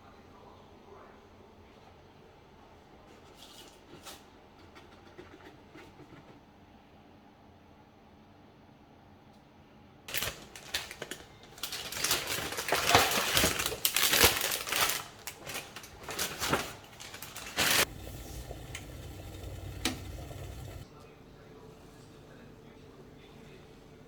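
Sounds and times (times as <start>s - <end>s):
packaging crinkling: 10.1s - 18.0s
low steady hum: 15.2s - 24.0s.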